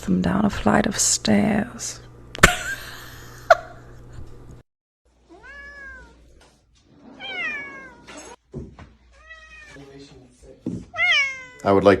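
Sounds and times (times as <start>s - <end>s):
cat meowing: 5.2s - 6.3s, 7.1s - 8.4s, 9.2s - 9.8s, 10.9s - 11.8s.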